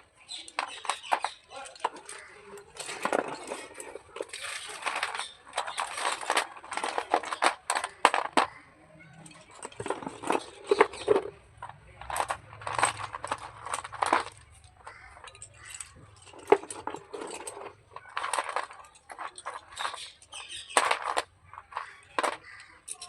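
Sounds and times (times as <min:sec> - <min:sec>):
slate pencils crunching and scraping: 0:00.0 - 0:23.0.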